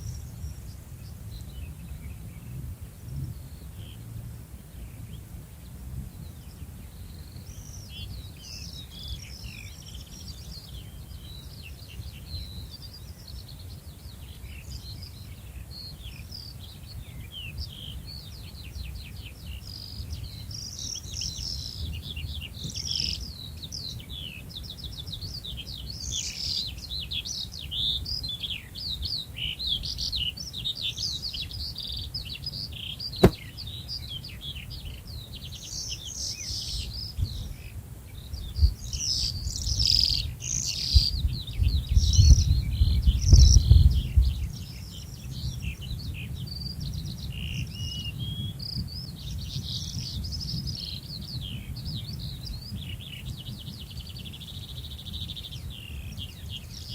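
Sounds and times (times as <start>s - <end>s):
songbirds chirping and trilling: 0.0s - 56.9s
sharp click: 33.2s - 33.4s.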